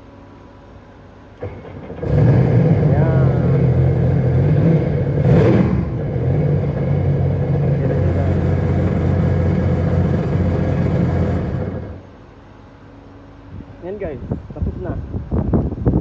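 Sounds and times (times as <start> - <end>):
watercraft engine running: 1.4 - 12.1.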